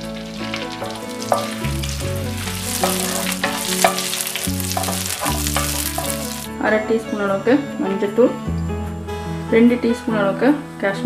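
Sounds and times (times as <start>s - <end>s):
spices sizzling in pan: 0.0s - 6.9s
stirring clicks and scrapes: 0.4s - 6.5s.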